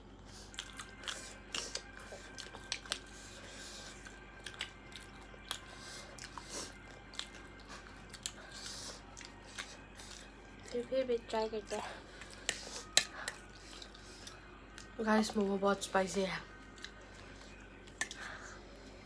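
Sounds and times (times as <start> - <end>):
person chewing crunchy snack: 0.2 - 10.8, 12.0 - 15.0.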